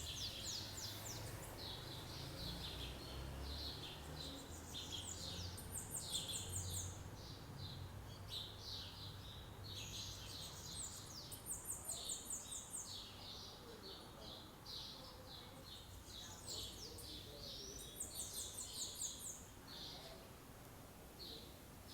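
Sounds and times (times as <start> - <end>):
wild birds chirping and singing: 0.0 - 20.2.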